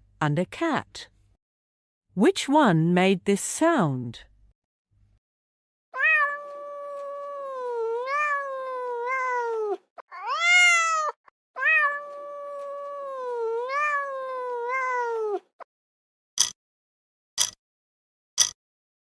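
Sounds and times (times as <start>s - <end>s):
cat meowing: 6.0s - 15.5s.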